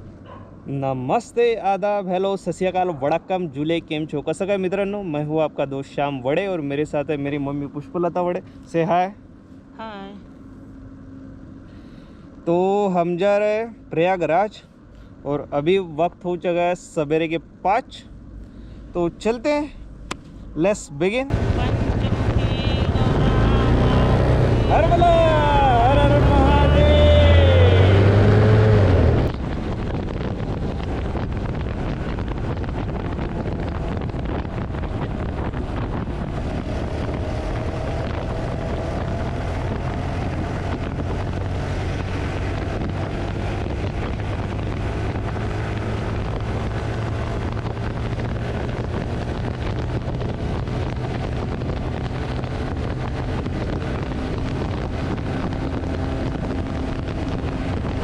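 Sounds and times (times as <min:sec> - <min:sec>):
motorcycle engine hum: 0:00.0 - 0:58.0
wind buffeting microphone: 0:21.3 - 0:58.0.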